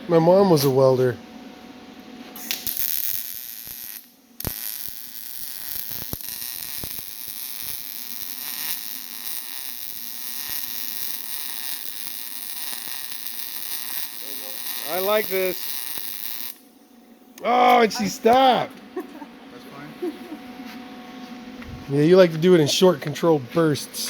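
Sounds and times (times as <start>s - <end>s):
welding arc crackling and buzzing: 2.2s - 18.7s.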